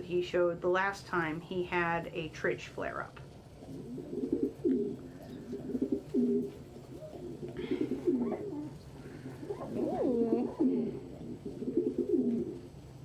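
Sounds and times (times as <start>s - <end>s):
pigeons cooing: 3.3s - 13.0s.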